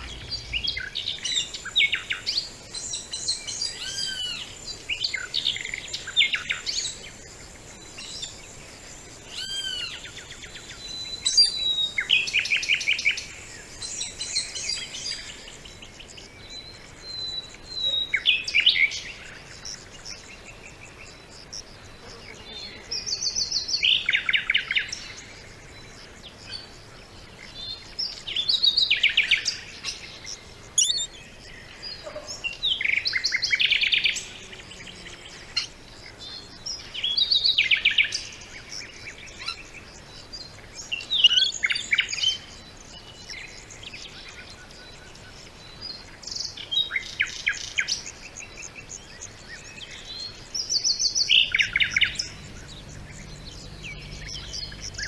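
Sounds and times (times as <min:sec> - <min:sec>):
songbird trilling: 0:00.0 - 0:15.8, 0:30.8 - 0:31.2, 0:51.2 - 0:55.0
faint background hiss: 0:00.0 - 0:55.0.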